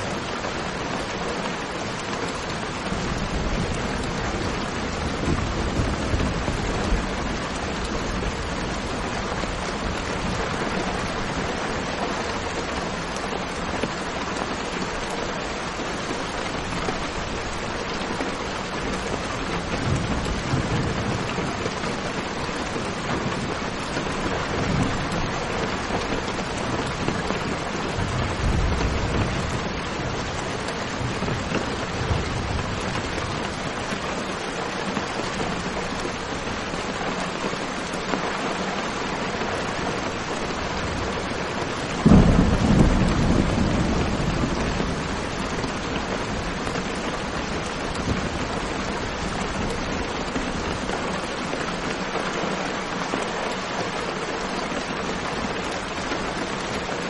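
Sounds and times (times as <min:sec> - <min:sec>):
steady rain hissing: 0:00.0 - 0:57.0
low rumbles of thunder: 0:02.6 - 0:11.0, 0:40.6 - 0:49.3.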